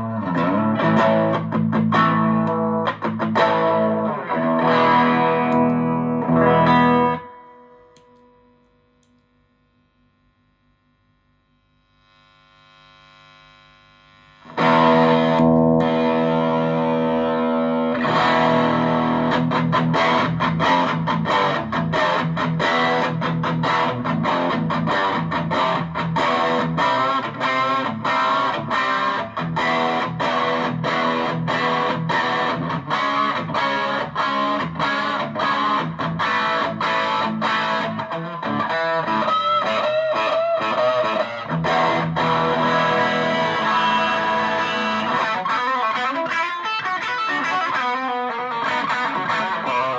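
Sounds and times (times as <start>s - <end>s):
distorted electric guitar: 0.0s - 10.1s, 11.5s - 49.9s
faint hum: 7.4s - 14.6s.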